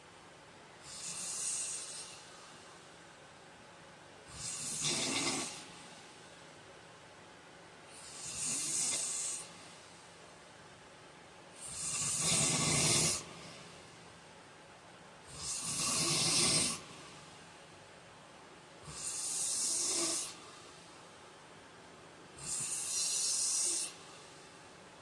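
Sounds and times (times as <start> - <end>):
man snoring: 0.8 - 2.2, 4.3 - 5.7, 8.0 - 9.5, 11.6 - 13.5, 15.3 - 16.9, 18.9 - 20.4, 22.4 - 24.0.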